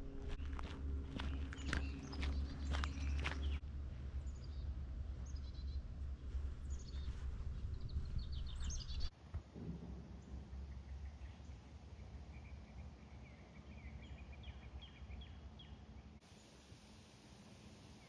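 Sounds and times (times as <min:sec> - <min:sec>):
birds chirping: 0:00.0 - 0:09.1, 0:10.2 - 0:16.2
steady low rumble: 0:00.0 - 0:13.4.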